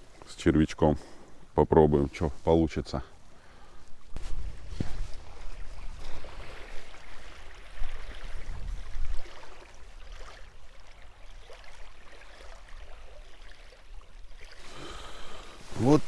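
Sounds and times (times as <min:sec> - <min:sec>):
faint rustles: 0:03.3 - 0:06.2, 0:14.6 - 0:16.0
wind rumbling on microphone: 0:04.1 - 0:10.3.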